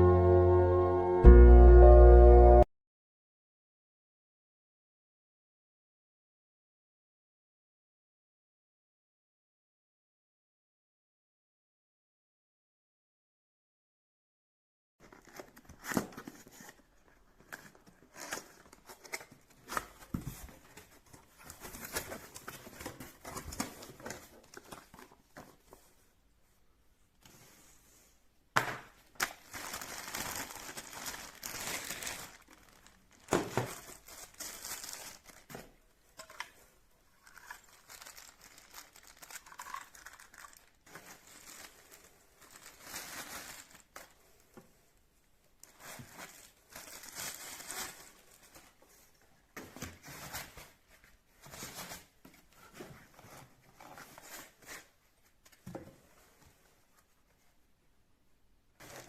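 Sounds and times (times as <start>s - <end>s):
crinkling and rustling: 15.0s - 26.2s, 28.9s - 57.6s, 58.8s - 59.0s.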